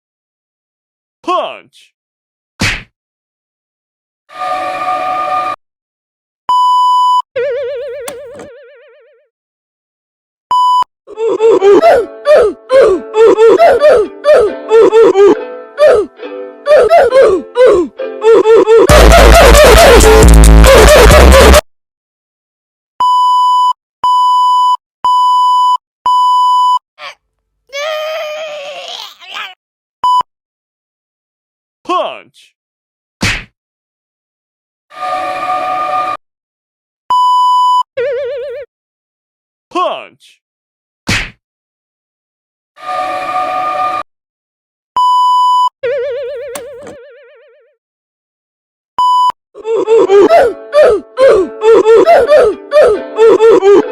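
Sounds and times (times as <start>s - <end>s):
censor bleep tones: 23.0s - 26.8s
cartoon boing: 46.1s - 47.7s
short clicks: 46.5s - 47.0s.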